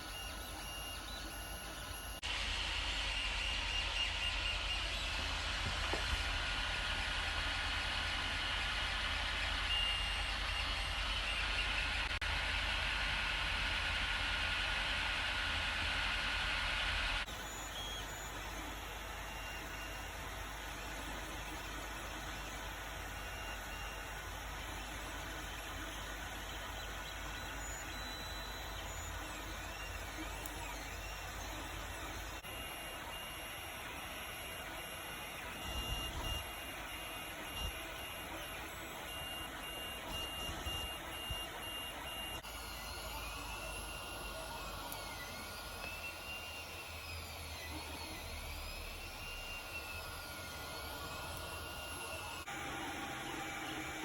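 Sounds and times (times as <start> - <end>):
stepper motors whining: 15.8 - 54.0.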